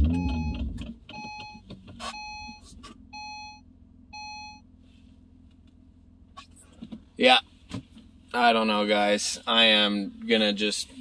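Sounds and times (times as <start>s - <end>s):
car warning chime: 0.0s - 4.7s
loud low car rumble: 0.0s - 11.0s.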